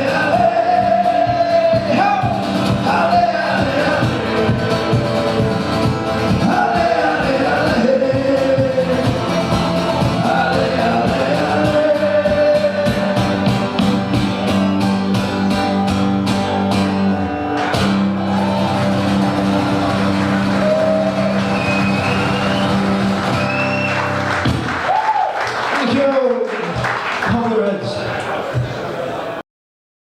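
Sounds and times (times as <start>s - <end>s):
person singing: 0.0s - 14.8s
steady drum beat: 0.0s - 15.3s
rock guitar: 0.0s - 24.9s.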